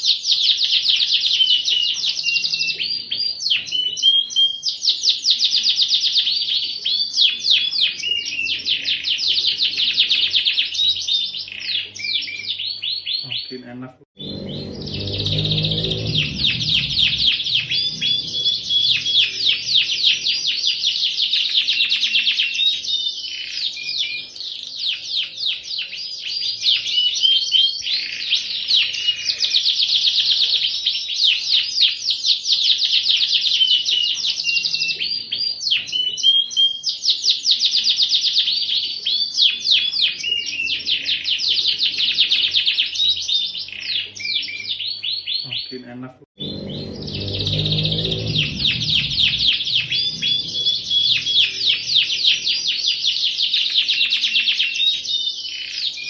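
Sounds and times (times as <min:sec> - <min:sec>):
canary singing trills: 0:00.0 - 0:56.0.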